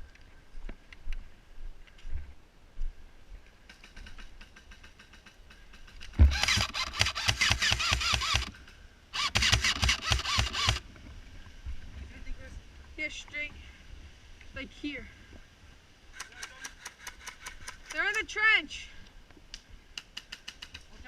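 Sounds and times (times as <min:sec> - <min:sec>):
airsoft gun full-auto bursts: 0:06.2 - 0:08.6, 0:09.2 - 0:10.8.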